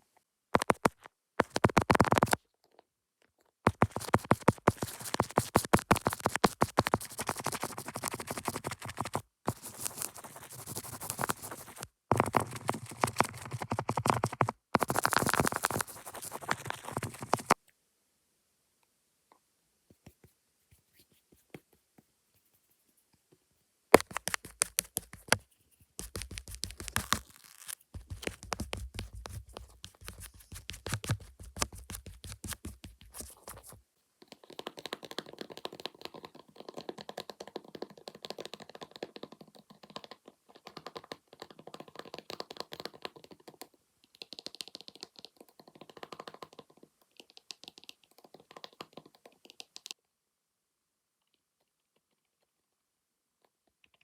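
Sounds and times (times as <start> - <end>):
fast tapping on camera lens: 0.5 - 2.4, 3.7 - 17.6, 24.0 - 25.4, 26.0 - 27.3, 27.9 - 50.0
scratchy rubbing and brushing: 0.6 - 2.4, 3.7 - 17.6, 20.1 - 23.1, 24.0 - 33.8.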